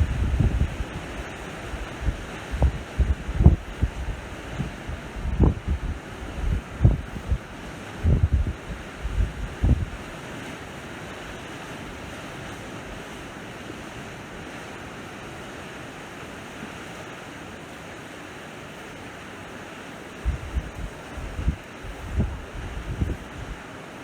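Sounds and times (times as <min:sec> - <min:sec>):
wind buffeting microphone: 0:00.0 - 0:10.2, 0:20.2 - 0:23.7
sea waves washing onto shore: 0:00.0 - 0:24.0.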